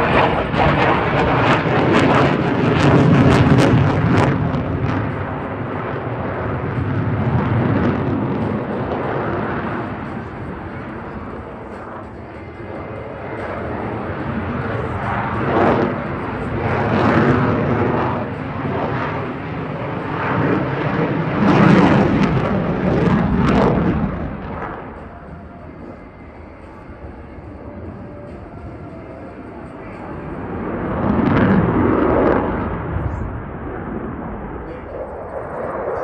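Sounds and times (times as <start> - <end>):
fighter jet flypast: 0.0 - 36.0.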